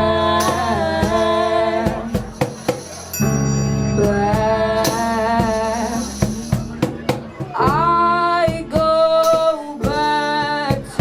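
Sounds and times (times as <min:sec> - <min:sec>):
live rock band playing: 0:00.0 - 0:11.0
drum hits: 0:04.0 - 0:10.1.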